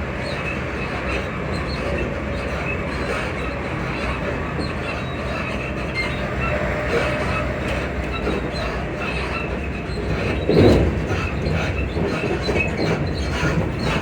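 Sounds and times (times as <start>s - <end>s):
suspension squeaks and creaks: 0.0s - 14.0s
train running rumble: 0.0s - 14.0s.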